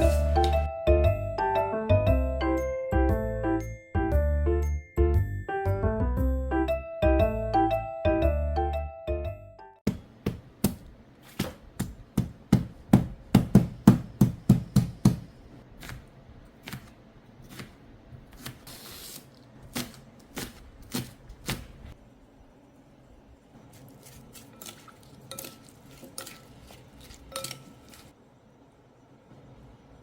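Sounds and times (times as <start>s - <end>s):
knife chopping on cutting board: 9.9s - 18.6s.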